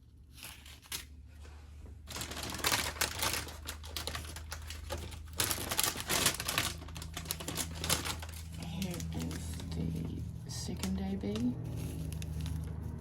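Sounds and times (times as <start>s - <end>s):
low steady hum: 0.0s - 13.0s
resin beads rattling in plastic bag: 2.1s - 10.2s.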